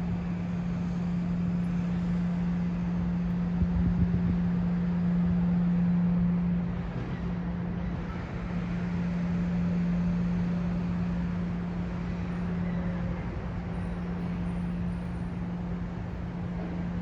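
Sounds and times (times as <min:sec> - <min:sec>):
traffic noise: 0:00.0 - 0:17.0.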